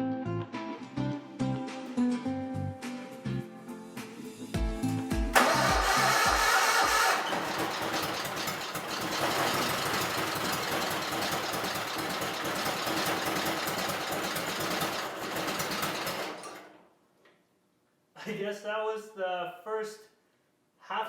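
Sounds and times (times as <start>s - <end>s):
engine running unevenly: 5.4s - 16.4s.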